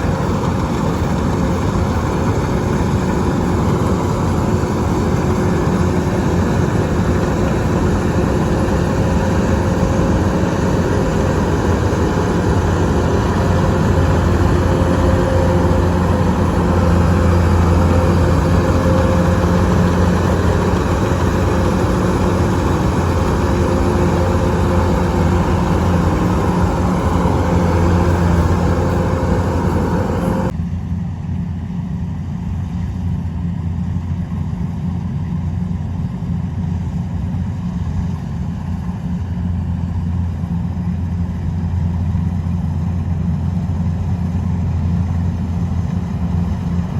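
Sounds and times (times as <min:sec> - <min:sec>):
wide rushing noise: 0:00.0 - 0:30.5
engine low hum: 0:00.0 - 0:46.9.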